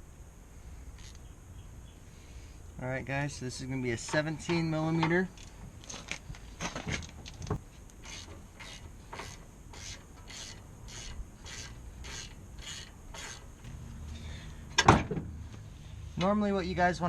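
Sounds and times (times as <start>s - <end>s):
ratchet wrench ratcheting: 8.0s - 13.4s.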